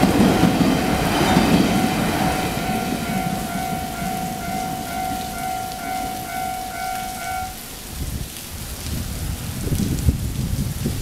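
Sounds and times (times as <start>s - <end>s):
level crossing warning bell: 0.0s - 7.8s
low rumbling noise: 0.0s - 8.2s.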